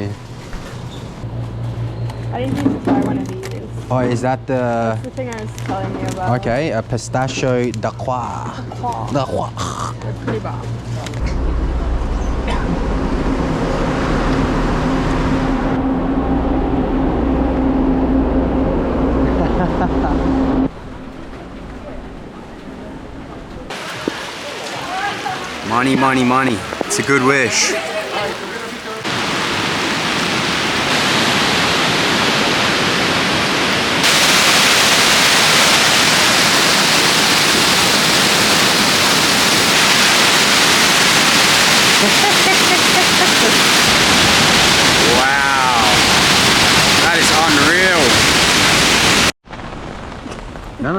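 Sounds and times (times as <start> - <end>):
vehicle engine hum: 0.0 - 23.8
low road rumble: 0.0 - 50.9
waterfall rushing: 11.2 - 21.1, 23.1 - 49.4.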